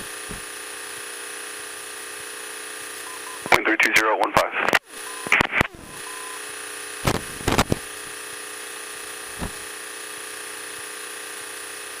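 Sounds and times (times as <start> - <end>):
soft thump: 9.4 - 9.6.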